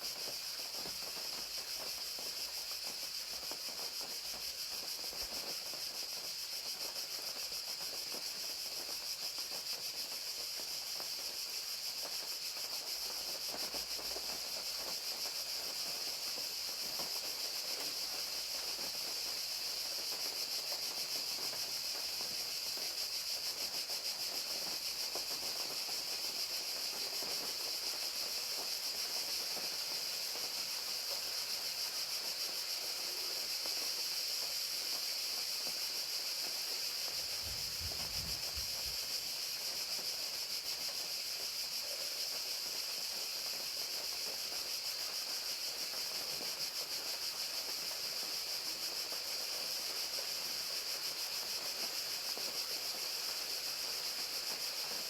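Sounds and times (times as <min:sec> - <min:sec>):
crickets chirping: 0:00.0 - 0:55.0
rain falling: 0:24.4 - 0:41.1.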